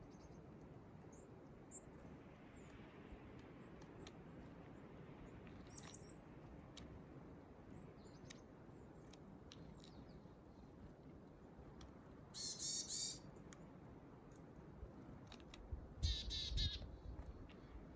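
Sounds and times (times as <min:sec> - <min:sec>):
bird chirping: 0:05.6 - 0:06.2, 0:12.3 - 0:13.3, 0:16.0 - 0:17.0.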